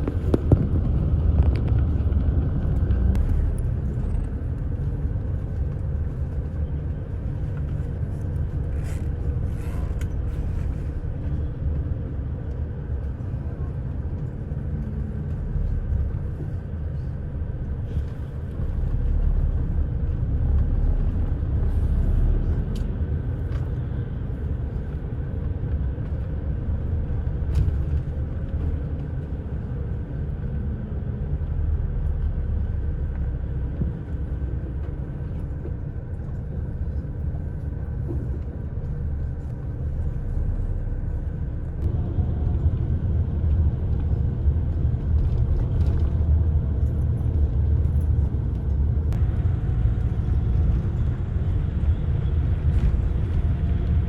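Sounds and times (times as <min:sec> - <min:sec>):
bus engine and road noise: 0:00.0 - 0:54.0.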